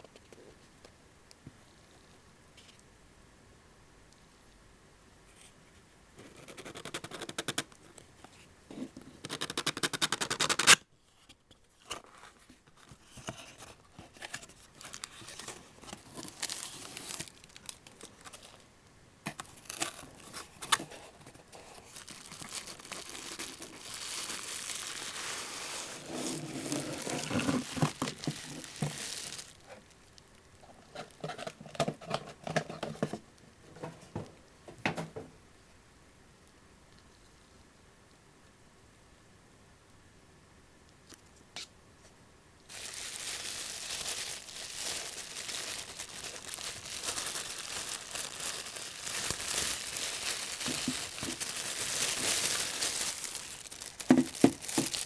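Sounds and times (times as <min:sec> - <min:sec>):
packaging ripping: 0:09.3 - 0:10.8, 0:14.2 - 0:18.6, 0:19.4 - 0:30.0, 0:42.7 - 0:55.0
wrapping crinkling and tearing: 0:09.3 - 0:10.8, 0:12.8 - 0:18.7, 0:19.4 - 0:32.2, 0:42.7 - 0:55.0.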